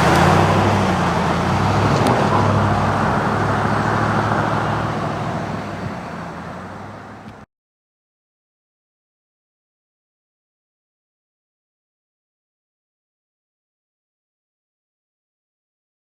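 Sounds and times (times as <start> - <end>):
loud rushing noise: 0.0 - 7.4
vehicle engine humming: 0.0 - 7.4.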